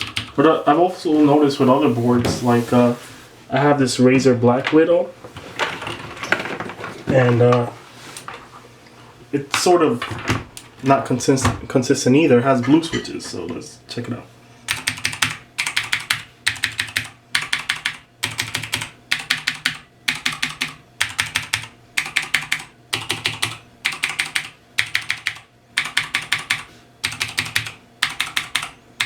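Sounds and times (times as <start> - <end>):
clicky mechanical keyboard typing: 0.0 - 0.4, 14.7 - 28.8.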